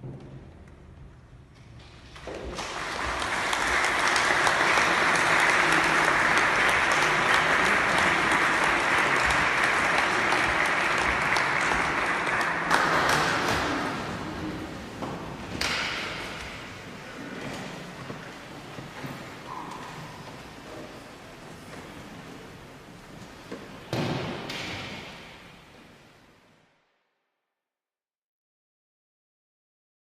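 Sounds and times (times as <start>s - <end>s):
audience applauding: 2.4s - 15.0s.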